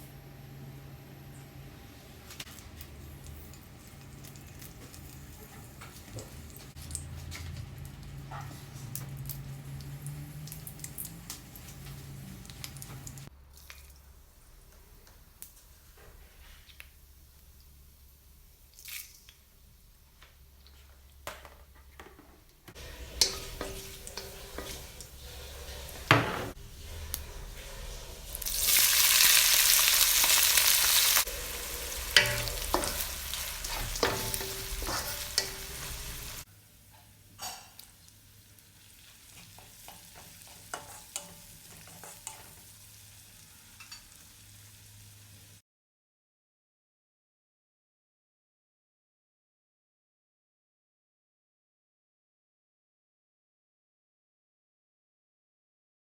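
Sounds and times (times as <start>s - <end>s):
food frying in hot oil: 3.2s - 20.8s, 22.8s - 45.6s
spatula scraping a pan: 22.8s - 29.2s, 30.2s - 36.4s, 39.2s - 42.7s.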